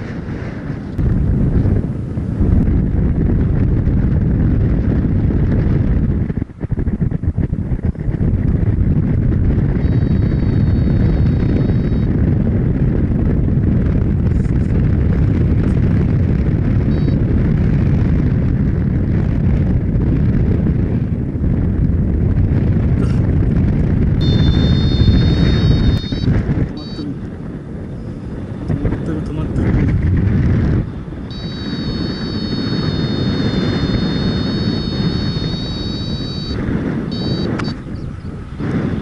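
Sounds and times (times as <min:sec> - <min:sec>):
wind buffeting microphone: 0:00.0 - 0:39.0
high electronic tone: 0:09.8 - 0:12.1, 0:16.9 - 0:17.2, 0:24.2 - 0:27.2, 0:31.3 - 0:38.1.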